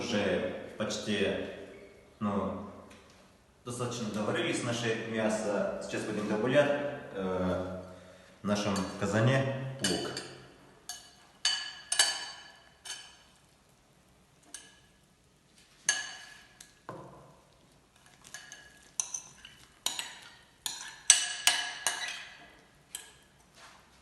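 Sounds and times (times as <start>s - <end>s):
metal utensil clinking on dishes: 9.8s - 13.4s, 18.0s - 23.3s.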